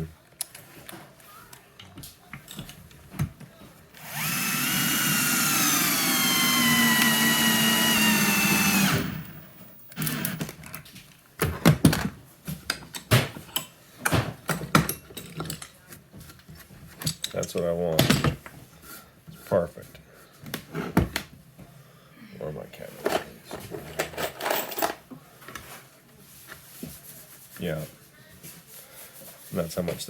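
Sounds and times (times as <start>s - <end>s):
power drill driving a screw: 4.0s - 10.5s.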